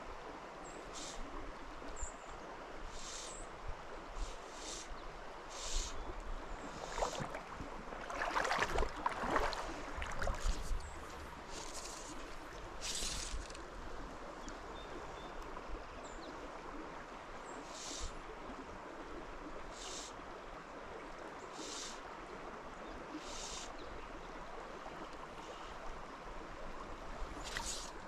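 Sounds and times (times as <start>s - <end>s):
stream water running: 0.0s - 28.0s
short high hissing swishes: 5.5s - 6.0s, 12.8s - 13.5s, 27.4s - 28.0s
close splashing and crackling: 6.8s - 13.6s.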